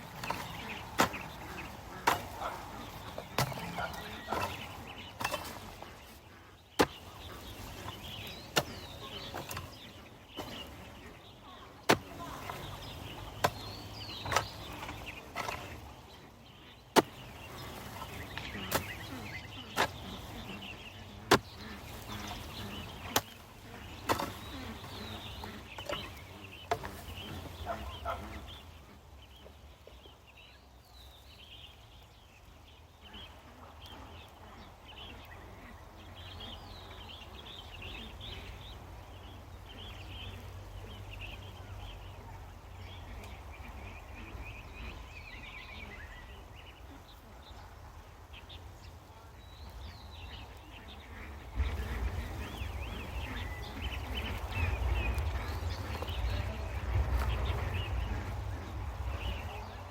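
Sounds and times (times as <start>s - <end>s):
digging tool striking soil: 0.0s - 5.8s, 6.8s - 9.8s, 10.4s - 10.8s, 11.8s - 15.8s, 16.9s - 20.6s, 21.2s - 27.3s.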